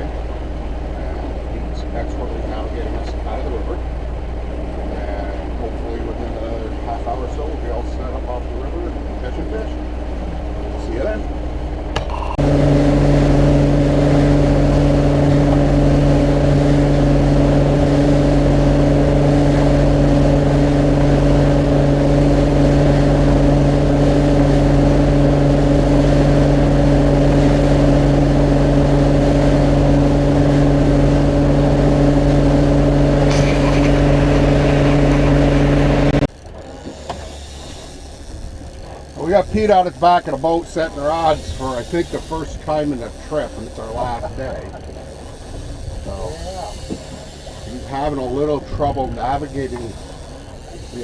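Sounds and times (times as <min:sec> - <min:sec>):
rushing water noise: 0:00.0 - 0:38.2
motorboat engine humming: 0:00.0 - 0:51.0.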